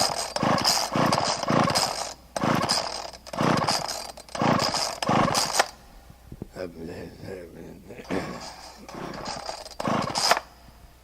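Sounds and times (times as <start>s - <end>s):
hand saw cutting wood: 0.0s - 5.8s, 8.0s - 10.5s.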